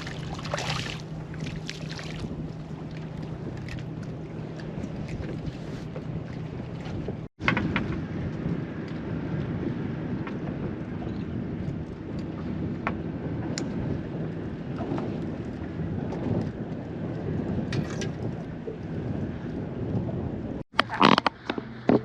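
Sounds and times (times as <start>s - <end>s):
water lapping: 0.0s - 7.3s
short knocks and splashes: 0.0s - 8.1s
wind buffeting microphone: 0.0s - 22.0s.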